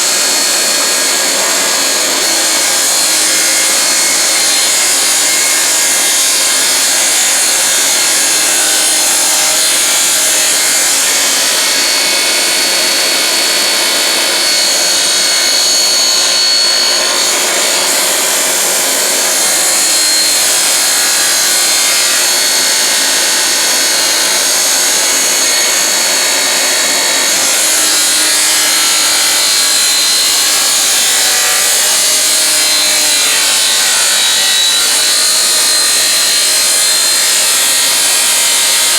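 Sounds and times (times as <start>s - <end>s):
table saw ripping board: 0.0s - 38.9s.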